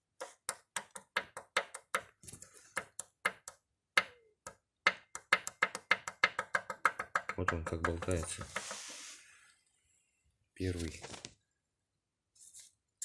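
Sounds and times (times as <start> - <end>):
piston knocking metal on metal: 0.4 - 2.1, 4.8 - 8.4.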